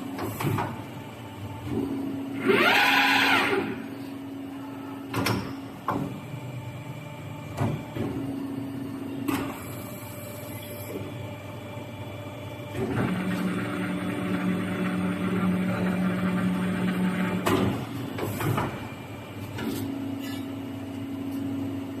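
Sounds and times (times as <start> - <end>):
machine motor hum: 5.6 - 19.6.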